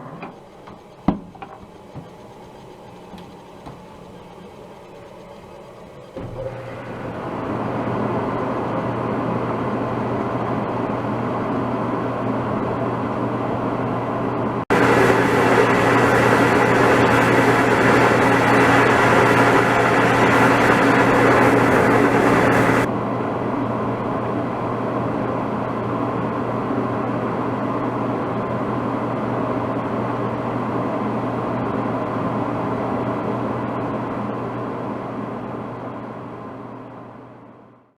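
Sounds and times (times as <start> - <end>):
clothes dryer whirring: 0.0 - 22.9
low hum: 14.7 - 22.9.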